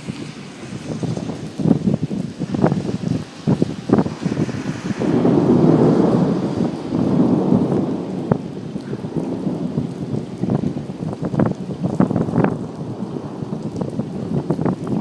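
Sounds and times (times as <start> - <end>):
steady rain: 0.0 - 15.0
thunder rumbling: 0.0 - 15.0.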